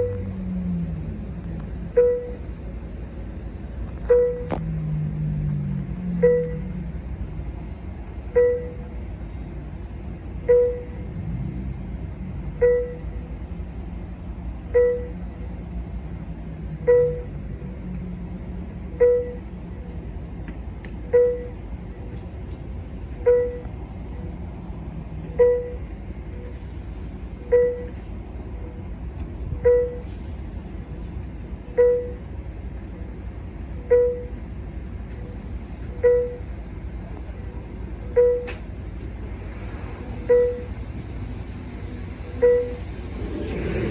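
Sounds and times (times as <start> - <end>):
diesel train idling: 0.0 - 43.9
short electronic beep: 1.9 - 2.4, 4.0 - 4.6, 6.2 - 6.7, 8.3 - 8.8, 10.4 - 11.0, 12.5 - 13.1, 14.7 - 15.2, 16.8 - 17.4, 23.2 - 23.7, 27.5 - 28.0, 29.6 - 30.0, 36.0 - 36.5, 40.2 - 40.8, 42.4 - 42.9.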